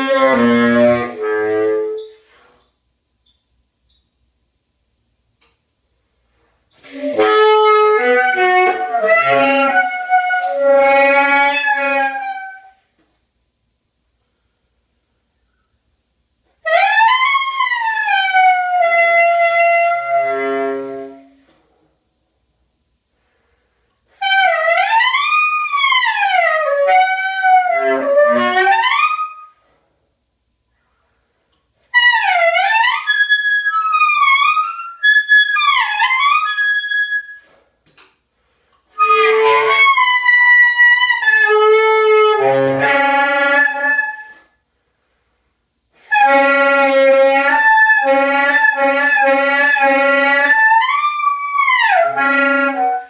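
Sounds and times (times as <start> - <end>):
saxophone playing sliding notes: 0.0 - 2.7, 6.7 - 12.8, 16.6 - 21.5, 24.1 - 29.6, 31.9 - 37.6, 38.9 - 44.5, 46.0 - 53.0.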